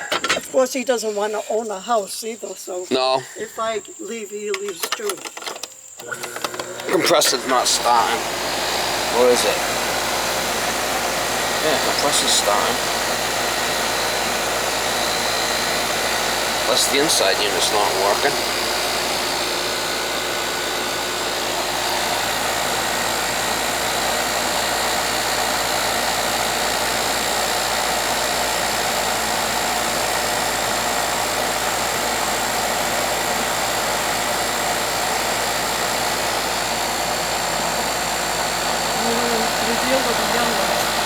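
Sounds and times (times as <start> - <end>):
air conditioner unit running: 6.0 - 41.0.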